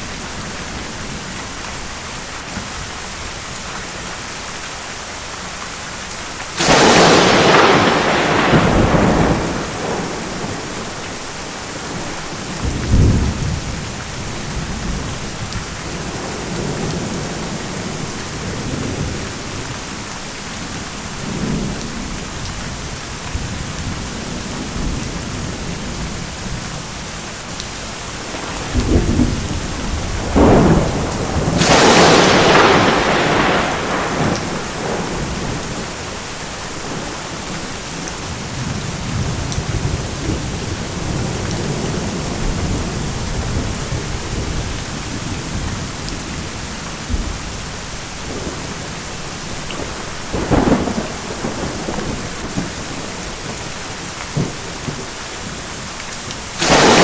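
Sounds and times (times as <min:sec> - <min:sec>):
steady rain falling: 0:00.0 - 0:57.0
sharp thunderclap: 0:06.6 - 0:11.2, 0:11.8 - 0:13.9, 0:28.4 - 0:36.2, 0:49.8 - 0:55.1, 0:56.6 - 0:57.0
low thunder rumbles: 0:06.6 - 0:20.0, 0:28.1 - 0:55.6, 0:56.5 - 0:57.0.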